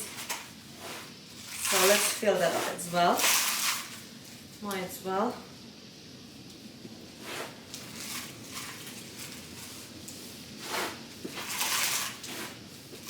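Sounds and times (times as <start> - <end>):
compost rustling scrapes: 0.0 - 4.7, 7.1 - 13.0.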